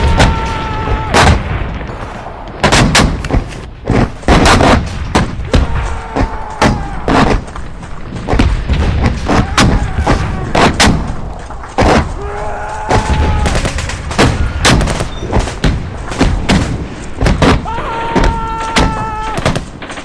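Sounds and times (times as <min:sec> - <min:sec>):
dense gunfire: 0:00.0 - 0:03.4, 0:12.9 - 0:20.0.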